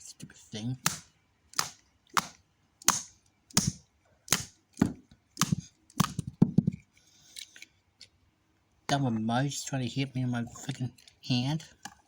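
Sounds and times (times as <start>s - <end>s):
sharp smacks with dull thuds: 1.6s - 6.2s.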